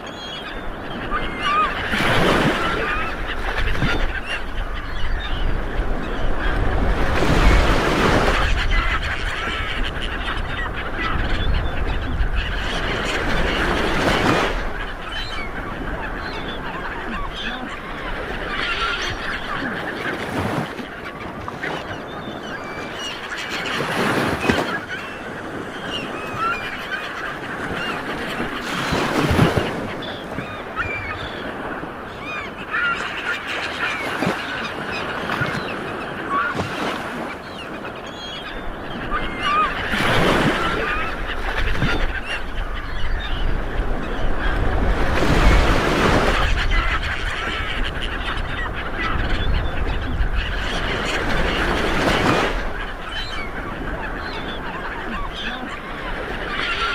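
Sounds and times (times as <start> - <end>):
sea waves washing against boat: 48.6 - 56.9.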